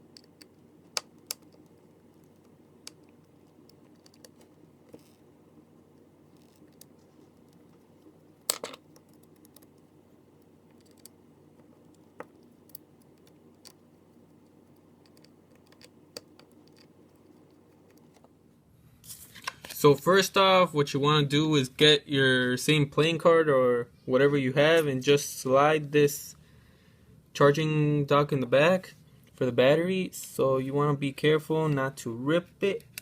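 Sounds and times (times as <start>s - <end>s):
screwdriver clicks and taps: 0.0s - 18.3s
faint steady hum: 0.0s - 33.0s.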